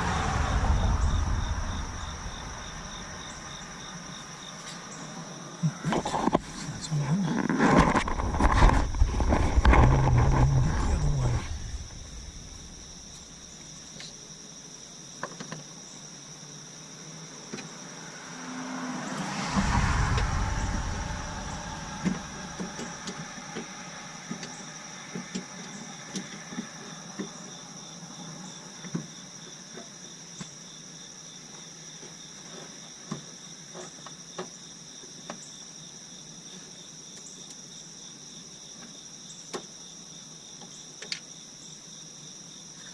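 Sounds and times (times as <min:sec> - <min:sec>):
low rumble: 0:00.0 - 0:04.8, 0:08.0 - 0:13.7, 0:18.1 - 0:26.1
vehicle passing: 0:00.0 - 0:04.9, 0:17.8 - 0:26.8
insects trilling: 0:00.0 - 0:42.9.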